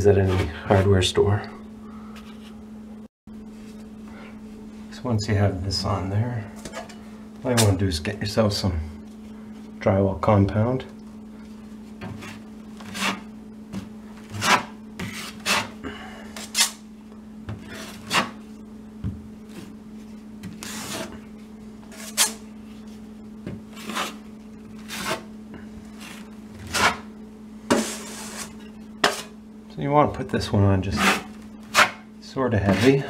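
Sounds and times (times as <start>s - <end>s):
steady low hum: 0.0s - 33.0s
drywall knife scraping compound: 12.1s - 13.3s, 14.3s - 15.8s, 17.7s - 18.4s, 20.6s - 21.2s, 21.9s - 22.4s, 23.7s - 24.2s, 24.8s - 25.3s, 26.0s - 27.1s, 27.7s - 29.4s, 30.9s - 32.0s, 32.6s - 33.0s.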